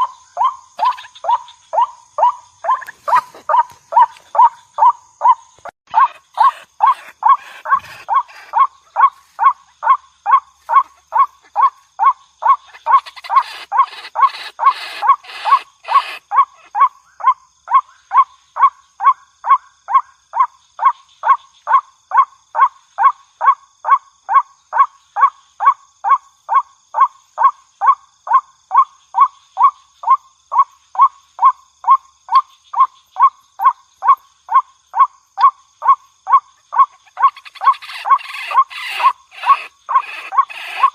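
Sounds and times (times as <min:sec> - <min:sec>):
waterhen calling: 0:00.0 - 0:16.9, 0:36.3 - 0:40.9.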